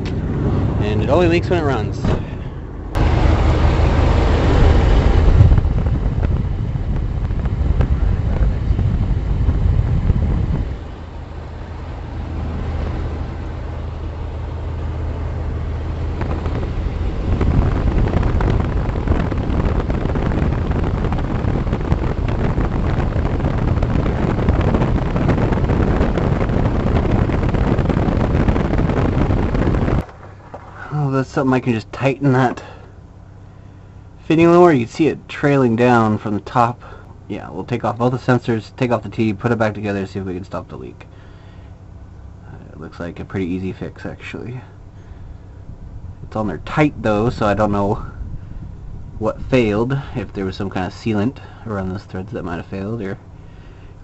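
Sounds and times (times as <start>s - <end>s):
wind rushing on microphone: 0.0s - 30.6s, 44.2s - 54.0s
engine idling rumble: 0.0s - 54.0s.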